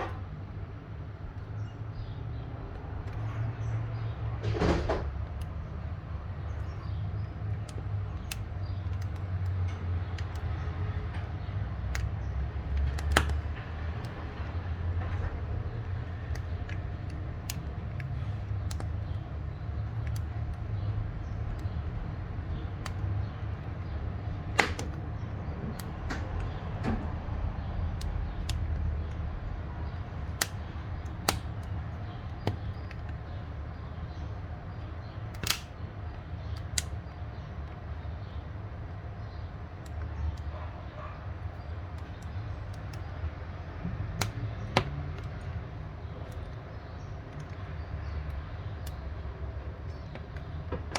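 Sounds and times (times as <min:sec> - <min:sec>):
wood crackling and popping: 0:02.4 - 0:40.6.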